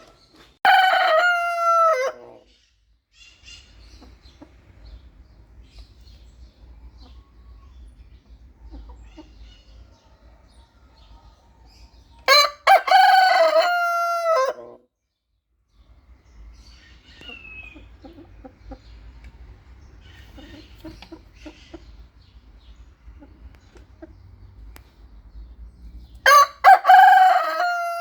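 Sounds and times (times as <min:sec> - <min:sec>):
rooster crowing: 0:00.7 - 0:02.4, 0:12.3 - 0:14.8, 0:26.2 - 0:28.0.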